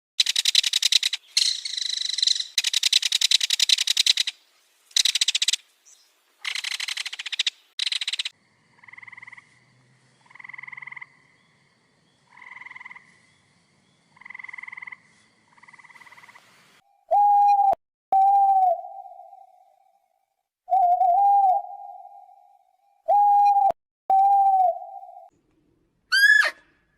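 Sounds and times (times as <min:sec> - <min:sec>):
clear whistle-like call: 0:23.0 - 0:25.3, 0:26.1 - 0:26.7.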